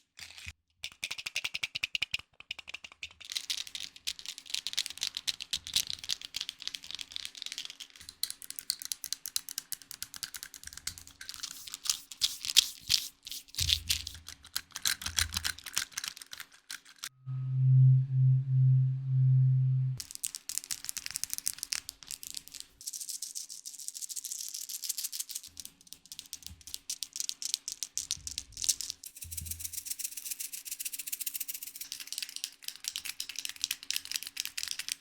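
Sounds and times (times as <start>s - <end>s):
loud low steady hum: 17.1s - 20.0s.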